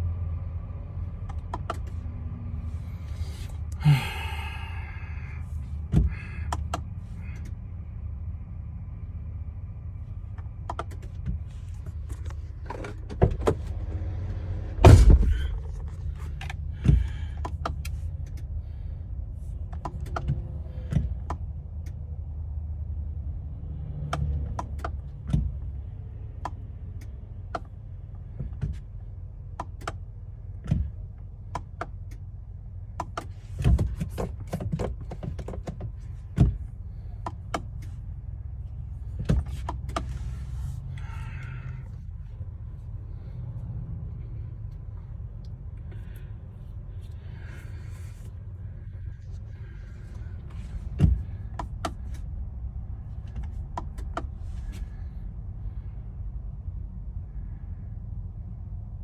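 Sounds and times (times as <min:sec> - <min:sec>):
steady low rumble: 0:00.0 - 0:23.9, 0:24.6 - 0:59.0
loud thump: 0:14.8 - 0:15.7
sharp clicks and knocks: 0:32.9 - 0:36.6.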